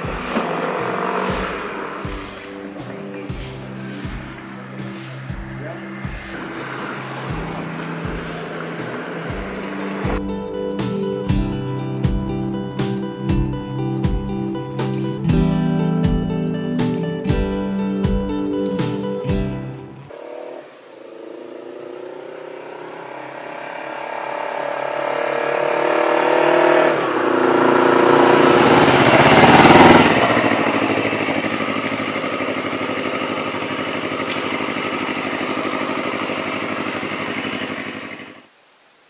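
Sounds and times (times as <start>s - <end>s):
motorcycle engine accelerating: 0.0s - 10.2s, 20.1s - 38.5s.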